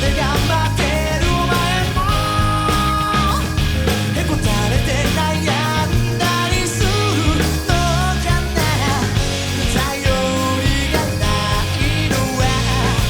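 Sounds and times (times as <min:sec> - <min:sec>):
live rock band playing: 0:00.0 - 0:13.0.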